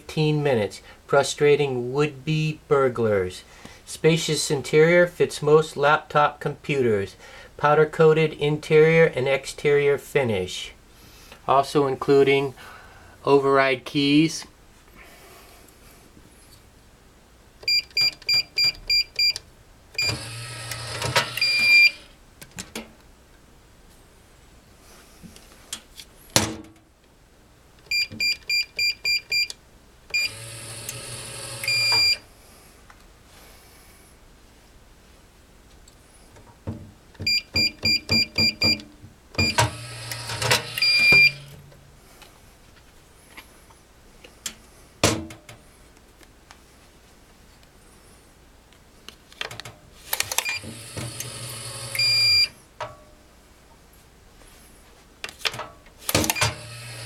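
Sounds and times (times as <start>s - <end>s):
keypad beeps: 17.6s - 19.4s, 20.0s - 20.2s, 21.2s - 22.1s, 27.9s - 29.5s, 30.1s - 30.4s, 31.6s - 32.2s, 37.2s - 38.8s, 39.4s - 39.7s, 40.4s - 41.5s, 52.0s - 52.5s
motorized lock whirring: 20.0s - 22.1s, 30.1s - 32.2s, 39.4s - 41.6s, 50.1s - 52.5s, 56.0s - 57.0s.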